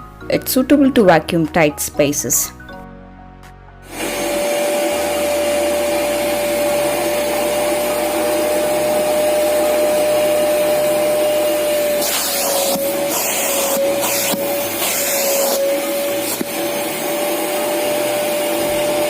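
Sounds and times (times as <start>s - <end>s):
vacuum cleaner running: 3.8s - 19.0s.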